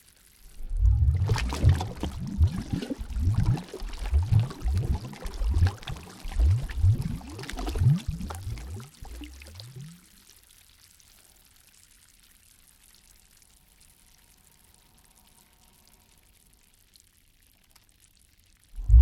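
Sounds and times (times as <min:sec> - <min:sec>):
faint water ambience: 0:00.0 - 0:19.0
water pouring and gurgling: 0:00.3 - 0:10.4.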